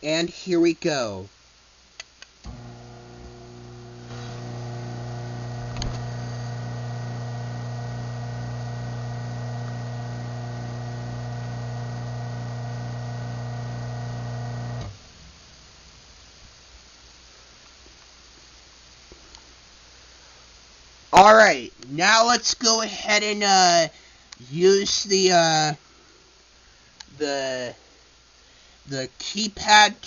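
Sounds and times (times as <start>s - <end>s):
garage door motor humming: 2.4s - 15.4s
garage door opener click: 5.6s - 6.1s.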